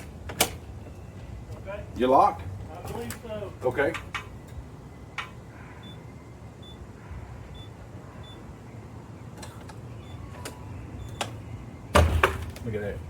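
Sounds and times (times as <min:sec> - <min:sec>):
keypad beeps: 0:05.8 - 0:06.9, 0:07.5 - 0:08.5, 0:09.4 - 0:11.4.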